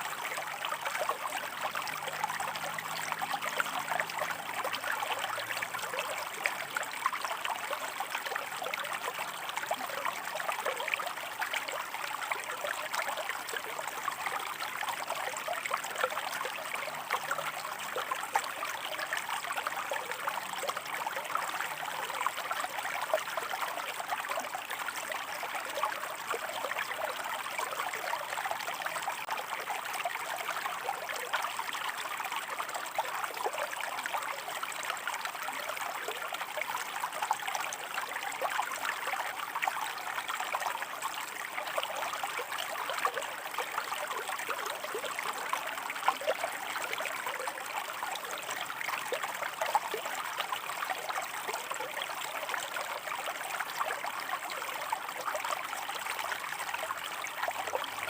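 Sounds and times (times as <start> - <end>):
stream babbling over rocks: 0.0 - 58.0.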